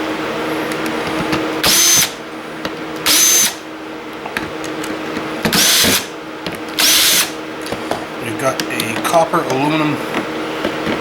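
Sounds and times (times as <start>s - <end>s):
cordless drill motor whining: 1.6s - 2.2s, 3.0s - 3.6s, 5.5s - 6.1s, 6.8s - 7.4s.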